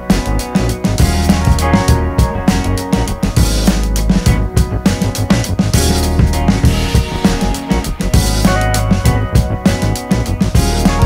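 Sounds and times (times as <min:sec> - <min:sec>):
band music with drum beat: 0:00.0 - 0:11.0.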